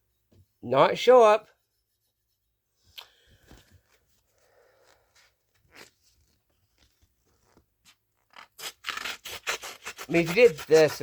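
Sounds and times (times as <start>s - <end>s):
knife scraping cardboard: 7.9s - 11.0s.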